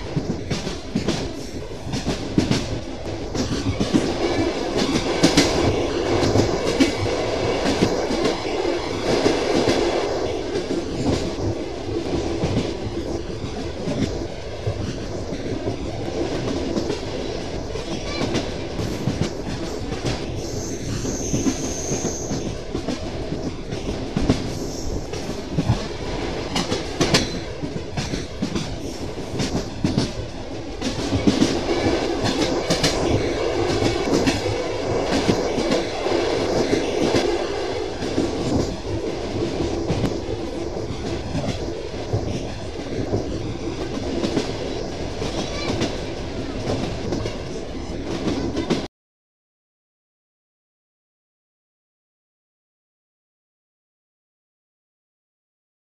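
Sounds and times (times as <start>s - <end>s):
train running rumble: 0.0s - 48.9s
train wheels clicking over rail joints: 17.9s - 37.3s.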